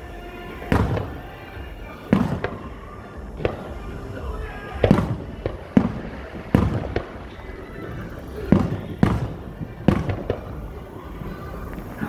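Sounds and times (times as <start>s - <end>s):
fireworks booming: 0.0s - 12.0s.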